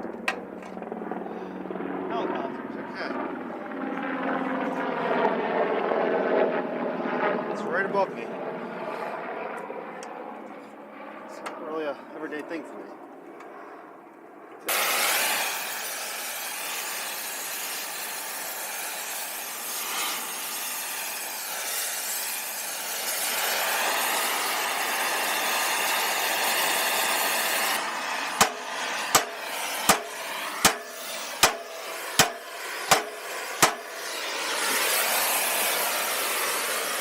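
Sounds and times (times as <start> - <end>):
harsh rushing noise: 27.7 - 37.0
hammer striking sheet steel: 28.4 - 34.2.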